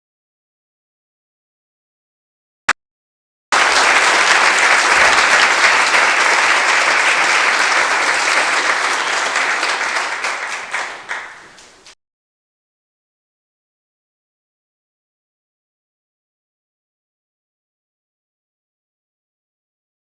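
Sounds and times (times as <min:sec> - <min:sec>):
audience applause: 0:03.6 - 0:12.0.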